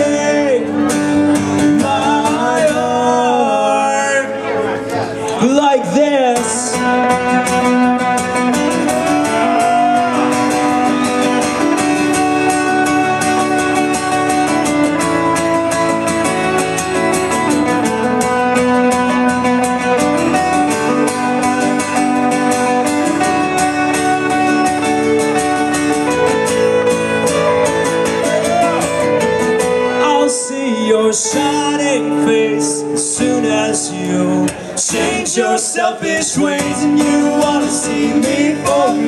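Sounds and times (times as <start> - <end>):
person singing: 0.0 - 4.5, 8.4 - 11.6, 26.5 - 39.0
strummed guitar: 0.0 - 39.0.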